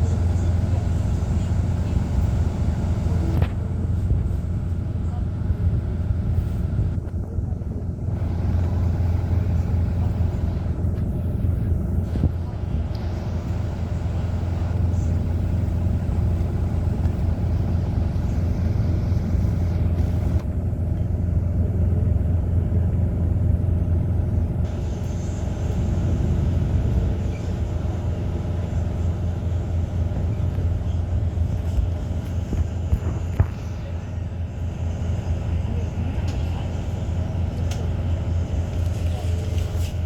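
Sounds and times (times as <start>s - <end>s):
bus engine and road rumble: 0.0s - 40.0s.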